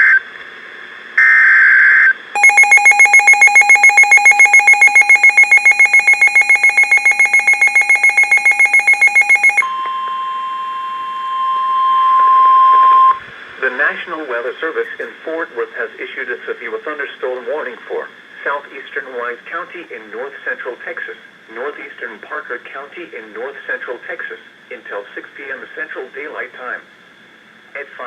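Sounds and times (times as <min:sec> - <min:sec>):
warbling digital data tones: 0:02.4 - 0:09.6
rapid electronic alarm beeps: 0:02.4 - 0:09.7
steady warning alarm tone: 0:02.4 - 0:13.2.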